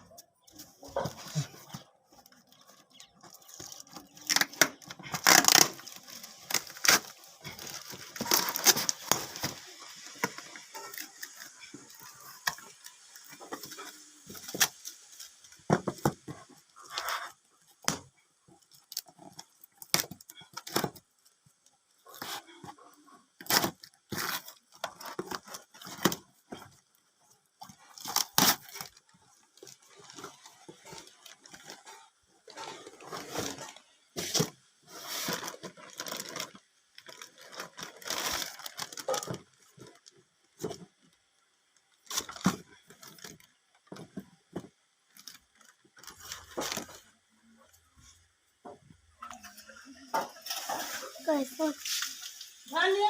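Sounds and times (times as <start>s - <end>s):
cardboard and plastic tearing: 0.6s - 18.1s, 18.7s - 21.0s, 23.4s - 26.8s, 27.6s - 40.9s, 42.0s - 47.1s.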